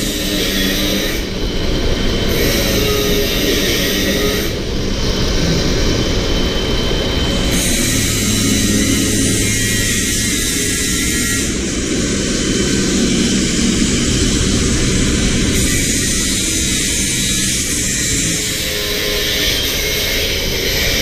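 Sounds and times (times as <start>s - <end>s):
machine rushing noise: 0.0s - 21.0s
low hum: 4.3s - 19.2s.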